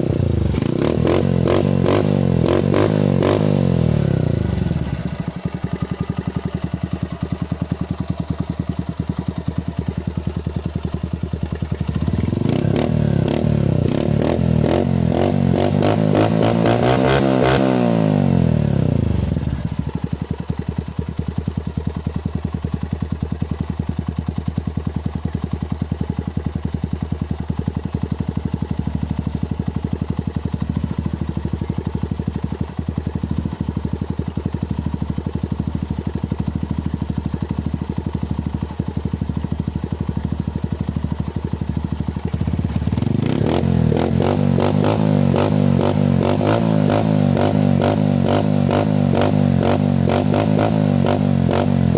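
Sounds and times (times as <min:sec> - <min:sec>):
motorcycle engine revving and idling: 0:00.0 - 0:51.9.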